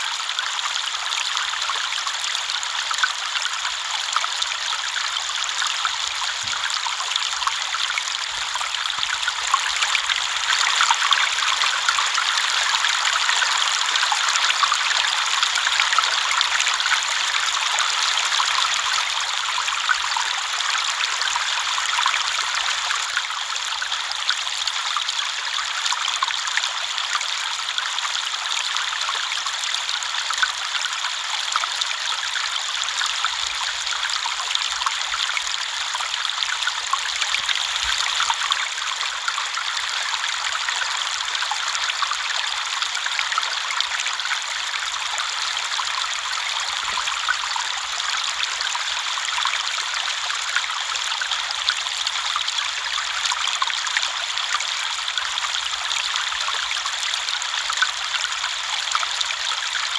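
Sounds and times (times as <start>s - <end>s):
river flowing over stones: 29.8s - 59.9s.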